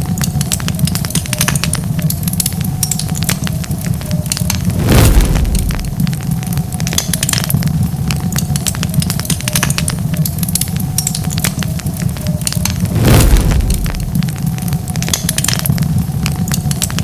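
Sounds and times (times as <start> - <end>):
wood fire crackling and popping: 0.0 - 17.0
flames rushing flare-up: 4.3 - 7.2, 12.4 - 16.5.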